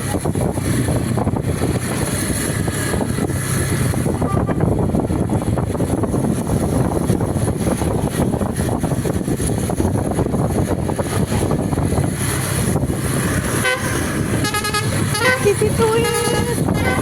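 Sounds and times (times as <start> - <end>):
bus engine and road noise: 0.0 - 17.0
bus horn: 13.4 - 17.0.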